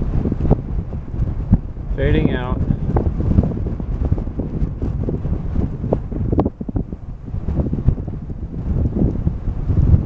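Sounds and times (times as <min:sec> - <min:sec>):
wind buffeting microphone: 0:00.0 - 0:10.0.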